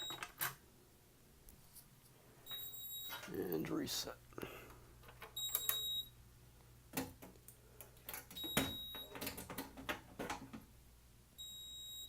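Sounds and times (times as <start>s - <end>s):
faint electrical hum: 0.0s - 12.0s.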